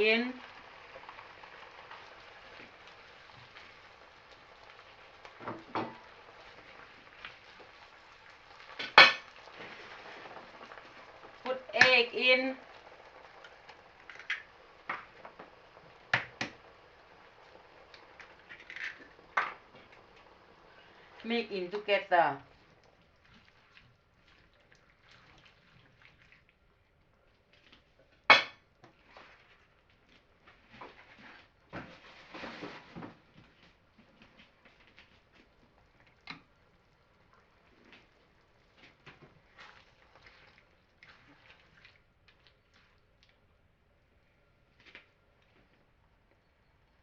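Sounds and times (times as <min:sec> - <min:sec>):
taps and knocks on cookware: 0:05.4 - 0:06.0.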